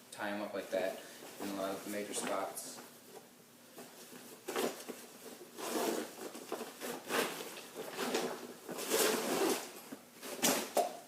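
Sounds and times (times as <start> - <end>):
nylon fabric rustling: 3.8 - 10.6
zipper pulled open: 5.6 - 6.1.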